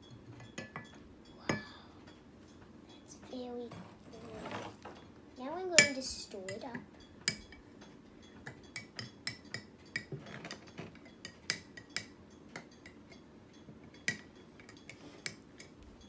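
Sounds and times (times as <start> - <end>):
spoon clinking against container: 5.8 - 15.8.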